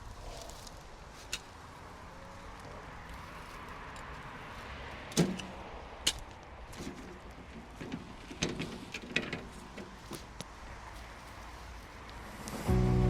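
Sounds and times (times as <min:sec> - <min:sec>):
outdoor background hiss: 0:00.0 - 0:13.0
digging tool knocking soil: 0:05.1 - 0:10.4.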